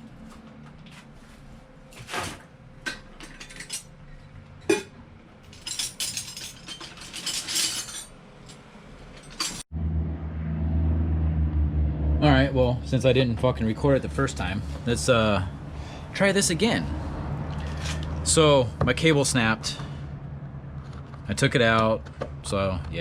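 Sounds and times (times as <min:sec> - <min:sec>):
steady low hum: 0:09.8 - 0:23.0.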